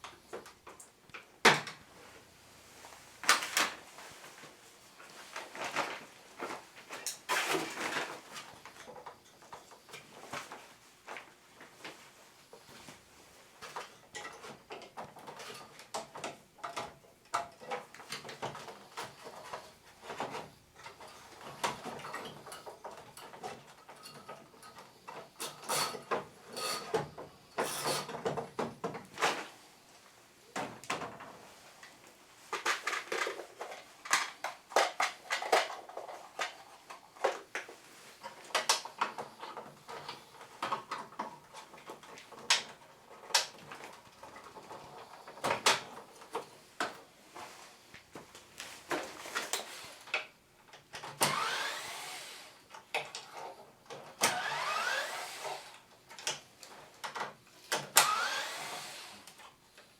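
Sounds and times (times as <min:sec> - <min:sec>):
plastic parts clicking and knocking: 0:00.0 - 0:01.8, 0:13.6 - 0:29.5, 0:32.5 - 0:47.1, 0:52.7 - 0:54.7, 0:56.0 - 0:58.5.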